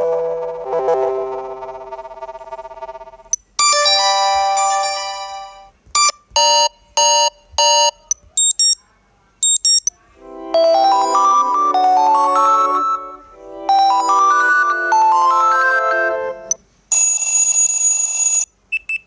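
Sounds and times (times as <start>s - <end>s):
bright electronic chord: 0.0s - 2.7s, 10.2s - 16.5s
stepping electronic melody: 0.0s - 8.1s, 10.2s - 16.6s
high double beeps: 6.0s - 8.8s, 9.4s - 9.9s.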